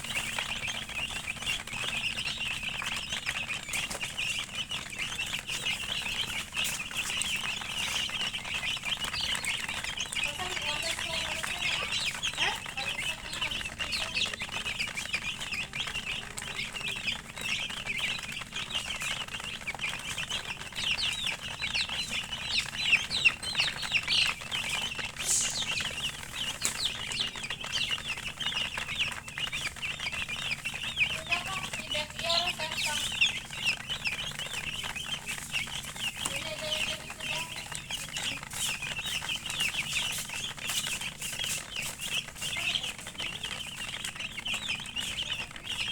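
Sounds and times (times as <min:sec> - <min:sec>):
chicks peeping: 0:00.0 - 0:45.9
lower clucking calls: 0:19.5 - 0:45.8.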